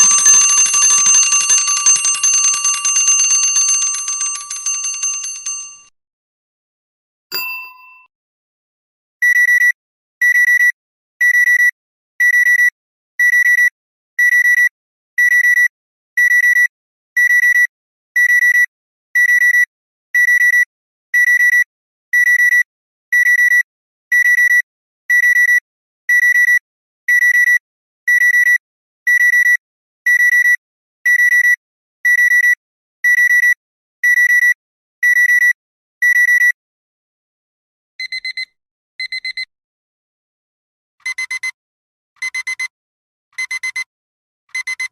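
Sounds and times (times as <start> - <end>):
alarm clock beeping: 0.0 - 5.9, 41.1 - 41.6.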